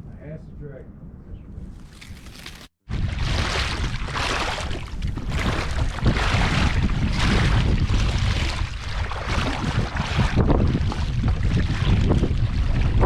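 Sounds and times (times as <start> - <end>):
wind buffeting microphone: 2.9 - 13.0.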